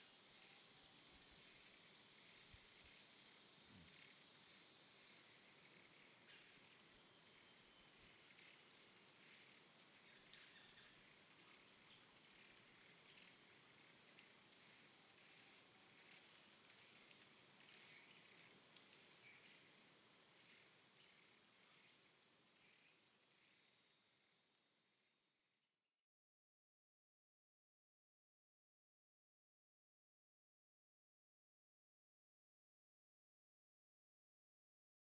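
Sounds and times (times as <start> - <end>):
faint insect chirring: 0.0 - 24.8.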